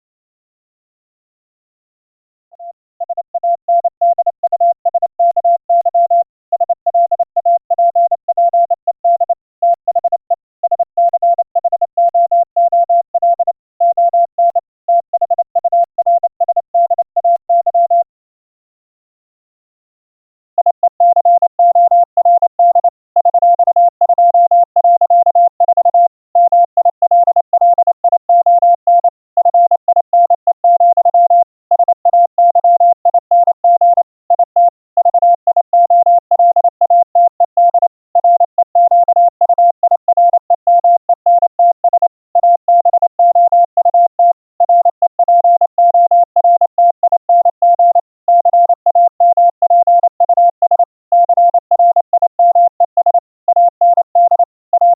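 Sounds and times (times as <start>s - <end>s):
morse code tone: 2.6s - 18.1s, 20.6s - 54.9s.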